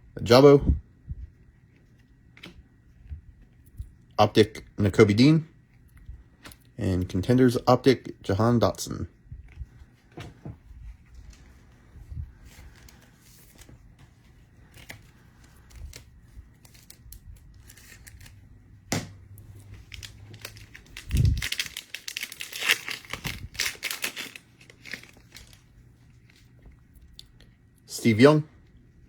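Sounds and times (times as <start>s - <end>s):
foil pack tearing and crinkling: 16.6s - 18.4s, 19.8s - 25.6s.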